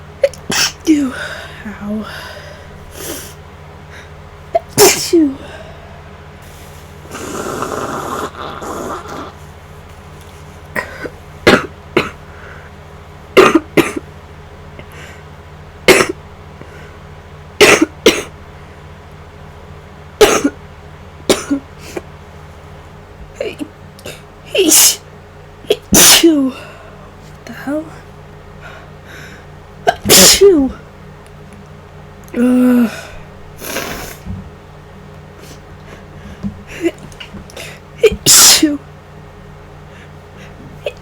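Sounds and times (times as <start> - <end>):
woman sneezing: 0.2 - 1.2, 4.6 - 5.5, 23.4 - 25.0, 25.7 - 26.7, 29.9 - 30.8, 37.6 - 38.8
rushing breath or sniffing: 33.6 - 34.3.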